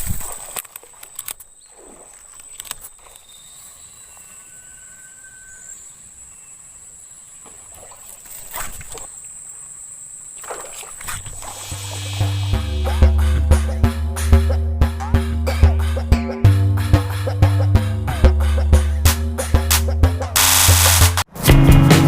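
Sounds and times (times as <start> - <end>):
water splashing: 0.0 - 3.4, 7.4 - 9.2, 10.3 - 12.7
music with a beat: 11.8 - 22.0.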